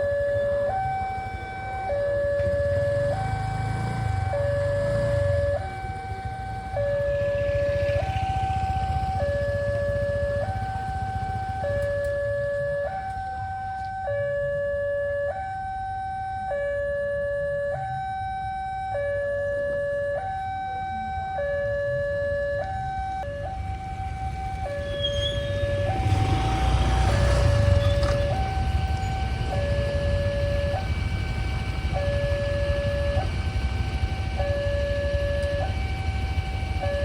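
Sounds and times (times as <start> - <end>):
level crossing two-tone alarm: 0.0 - 37.0.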